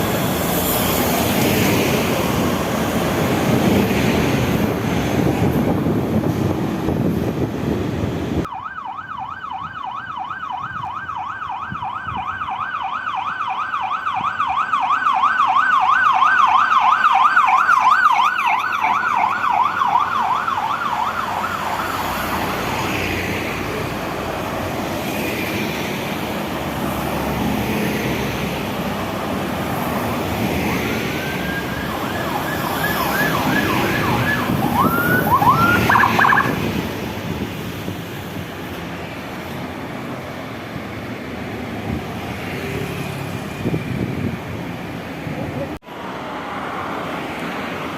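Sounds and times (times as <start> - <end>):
passing vehicles road noise: 0.0 - 47.9
siren yelping: 8.5 - 22.6, 30.7 - 36.8
siren winding and whooping: 31.3 - 36.6.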